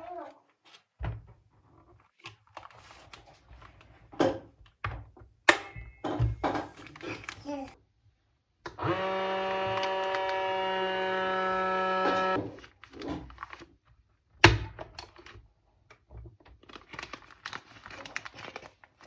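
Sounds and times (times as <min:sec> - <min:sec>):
vacuum cleaner motor humming: 0:08.7 - 0:12.4.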